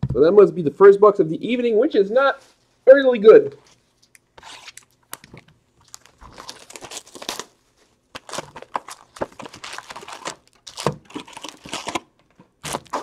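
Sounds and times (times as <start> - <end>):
packaging crinkled and torn open: 4.1 - 13.0.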